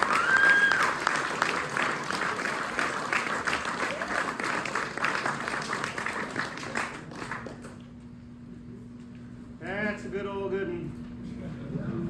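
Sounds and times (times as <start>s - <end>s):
audience applauding: 0.0s - 7.8s.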